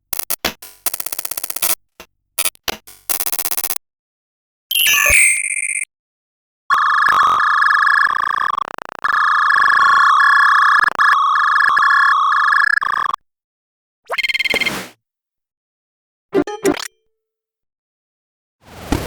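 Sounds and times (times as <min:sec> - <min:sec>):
digital glitch stutters: 0:00.2 - 0:01.8, 0:02.4 - 0:03.8, 0:07.1 - 0:07.5.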